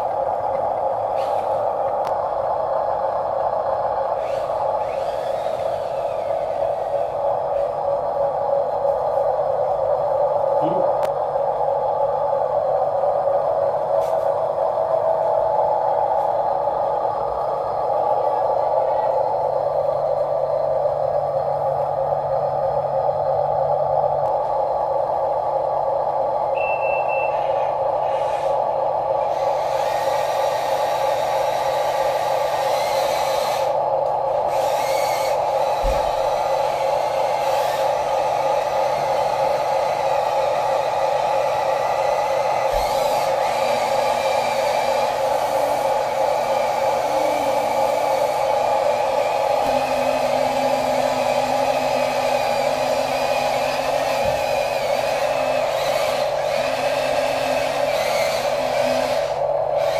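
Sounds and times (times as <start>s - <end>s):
small electric motors whirring: 34.5s - 40.0s, 42.6s - 59.9s.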